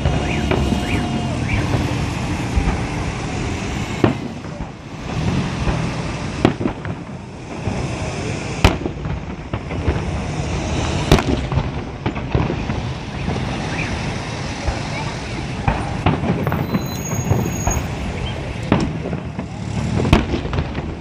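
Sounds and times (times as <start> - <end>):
continuous noise: 0.0 - 21.0
fireworks shells bursting: 15.7 - 21.0.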